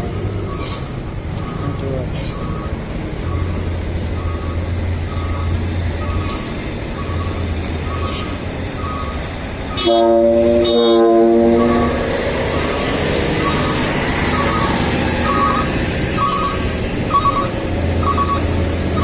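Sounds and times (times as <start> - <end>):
low engine hum: 0.0 - 19.0
short electronic beeps: 4.2 - 6.4, 11.6 - 19.0
truck air horn blasts: 9.7 - 12.0.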